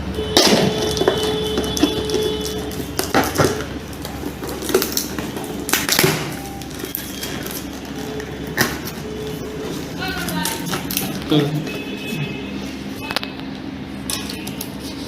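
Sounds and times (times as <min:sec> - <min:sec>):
packaging being handled: 0:00.7 - 0:12.2.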